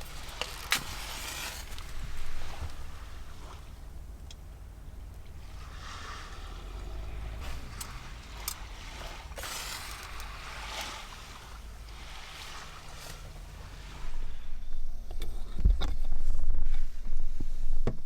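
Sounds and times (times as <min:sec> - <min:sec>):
steady low rumble: 0:00.0 - 0:18.0
sea waves breaking on shore: 0:05.5 - 0:14.3.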